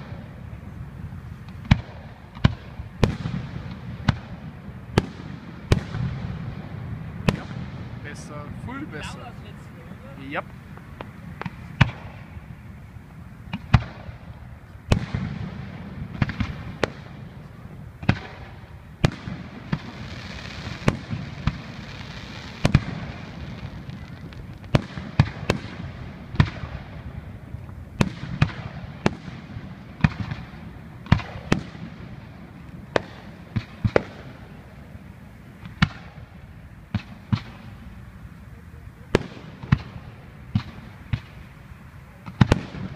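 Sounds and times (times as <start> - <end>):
fireworks bursting: 0.0 - 42.9
fireworks hiss: 14.8 - 42.9.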